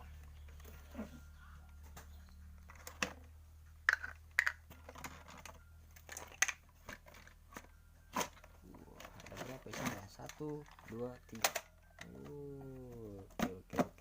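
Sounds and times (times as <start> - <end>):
low steady hum: 0.0 - 14.0
cardboard box and plastic packaging handled: 4.4 - 14.0.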